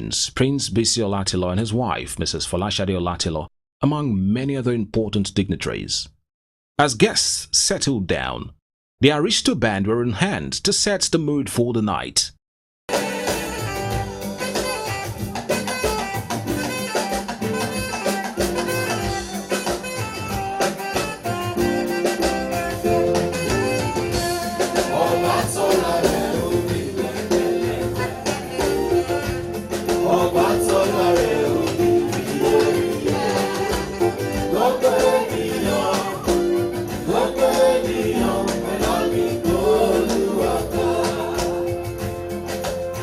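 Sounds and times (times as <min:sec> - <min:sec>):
live band playing dance music: 0:12.9 - 0:43.0
person singing: 0:24.4 - 0:41.9.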